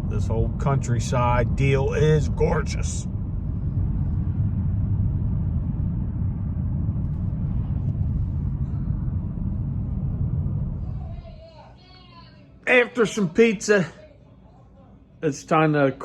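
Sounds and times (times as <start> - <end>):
car cabin road rumble: 0.0 - 11.6.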